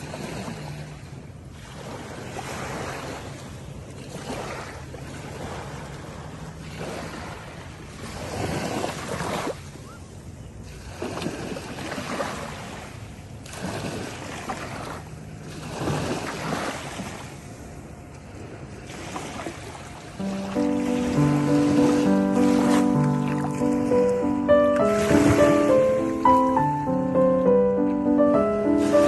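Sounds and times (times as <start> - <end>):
ocean surf breaking: 18.8 - 29.0
music with held notes: 20.2 - 29.0.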